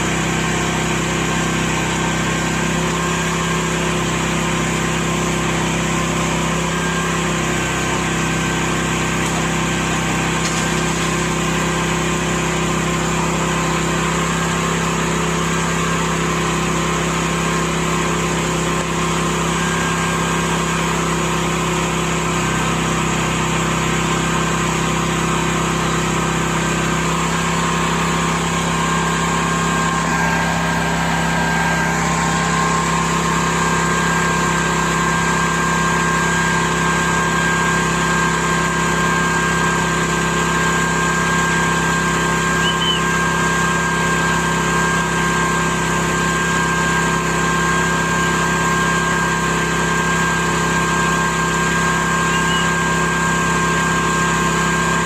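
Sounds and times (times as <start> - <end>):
honeybees buzzing: 28.4 - 34.5.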